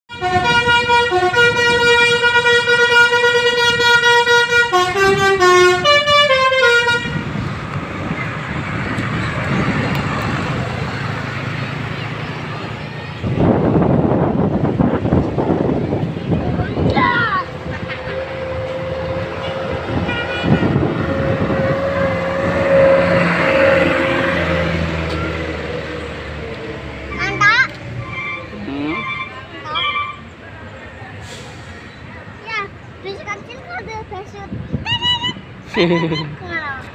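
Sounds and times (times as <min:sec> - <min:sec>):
bus musical air horn: 0:00.1 - 0:07.4, 0:17.6 - 0:24.7, 0:28.1 - 0:30.2
bus driving past: 0:00.1 - 0:36.9.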